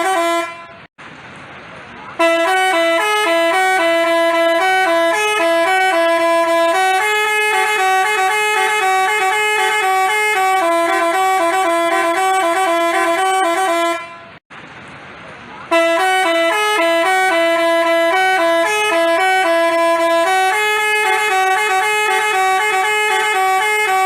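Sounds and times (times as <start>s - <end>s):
musical horn fast melody: 0.0s - 0.9s, 2.2s - 14.4s, 15.7s - 24.0s.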